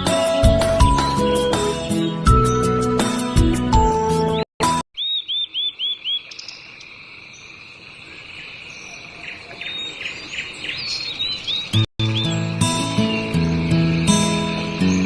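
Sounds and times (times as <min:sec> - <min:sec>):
bird chirping: 0:05.0 - 0:15.0.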